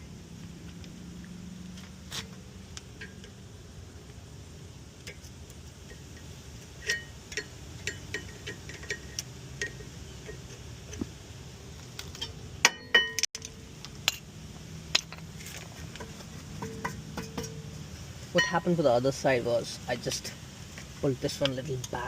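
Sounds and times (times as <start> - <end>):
steady low hum: 0.0 - 22.0
metal tools clinking: 6.8 - 10.7.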